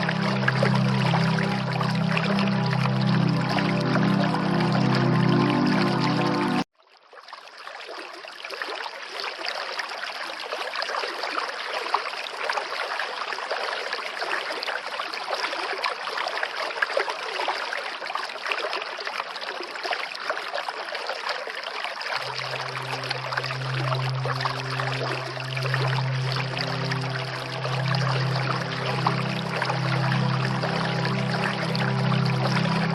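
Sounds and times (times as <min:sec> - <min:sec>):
music with low held notes: 0:00.0 - 0:06.6, 0:22.2 - 0:32.9
running water rushing: 0:00.0 - 0:06.6, 0:18.8 - 0:32.9.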